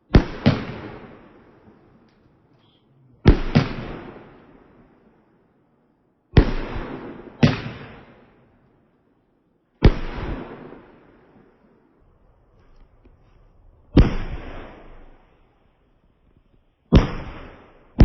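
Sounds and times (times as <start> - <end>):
fireworks bangs with echo: 0.0 - 2.1, 3.2 - 5.1, 6.3 - 8.4, 9.8 - 11.6, 13.9 - 15.4, 16.9 - 18.0.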